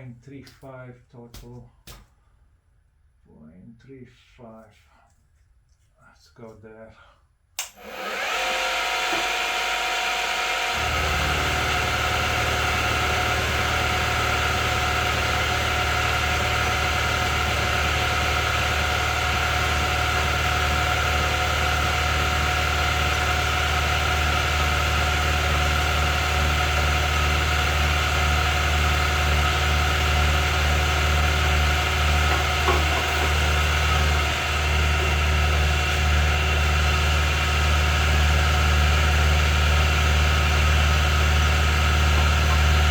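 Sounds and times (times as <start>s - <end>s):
milling machine whining: 7.6s - 42.9s
deeper hum: 40.1s - 42.9s.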